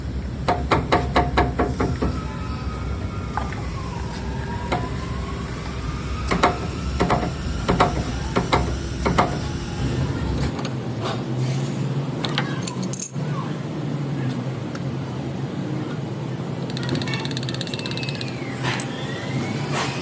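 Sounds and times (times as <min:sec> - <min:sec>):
steady low hum: 0:00.0 - 0:11.1.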